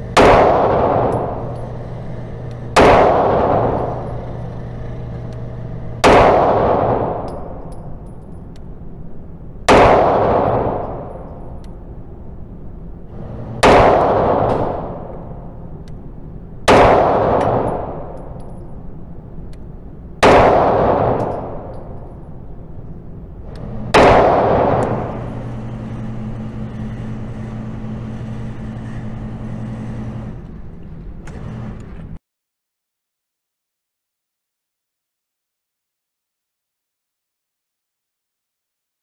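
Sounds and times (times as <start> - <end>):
steady low hum: 0.0 - 32.2
pistol shots ringing: 0.1 - 1.9, 2.8 - 4.4, 6.0 - 8.0, 13.2 - 15.5, 20.2 - 22.2, 23.5 - 25.7.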